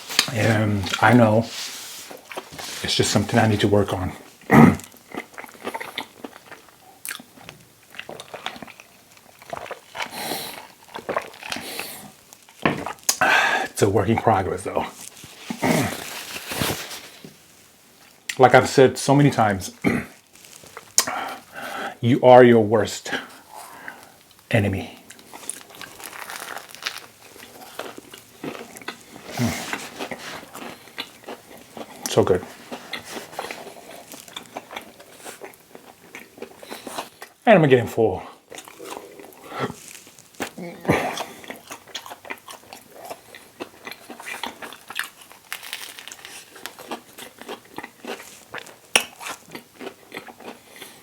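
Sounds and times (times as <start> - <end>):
chewing sandwich: 0.0 - 18.4, 19.6 - 22.0, 23.1 - 37.4, 38.2 - 51.0
soft crunches: 14.7 - 17.7, 20.1 - 21.7, 25.0 - 35.6.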